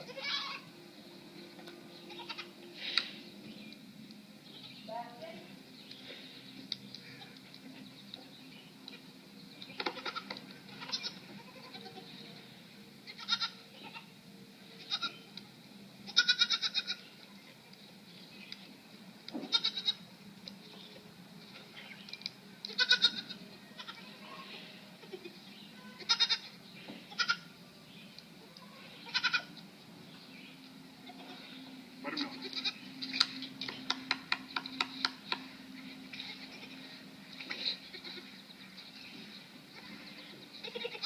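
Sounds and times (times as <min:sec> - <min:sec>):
goat bleating: 0:00.0 - 0:00.7, 0:02.0 - 0:02.6, 0:09.8 - 0:12.2, 0:13.0 - 0:14.1, 0:14.8 - 0:15.3, 0:16.1 - 0:17.6, 0:19.4 - 0:20.0, 0:22.7 - 0:27.5, 0:28.5 - 0:29.6, 0:31.0 - 0:33.2, 0:35.8 - 0:38.4, 0:39.7 - 0:41.0
low steady hum: 0:00.0 - 0:41.0.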